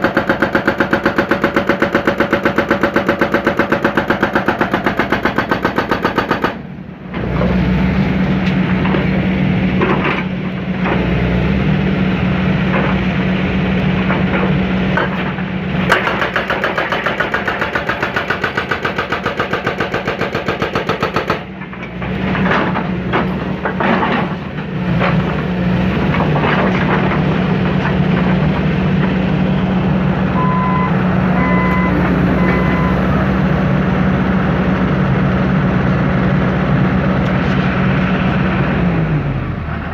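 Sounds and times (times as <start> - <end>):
excavator diesel engine under load: 0.0 - 39.9
short beeps: 30.4 - 33.1.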